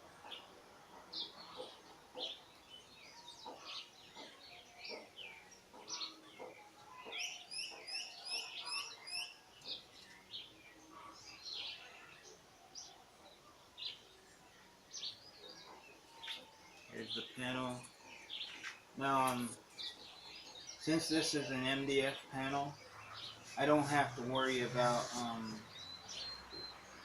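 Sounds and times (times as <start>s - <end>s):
songbirds chirping: 0.0s - 27.0s.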